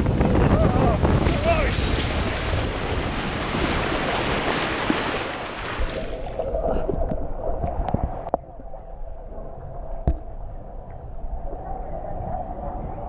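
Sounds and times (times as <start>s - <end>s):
water rushing on a water slide: 0.0s - 8.3s
wind noise on microphone: 0.0s - 8.5s, 9.5s - 13.0s.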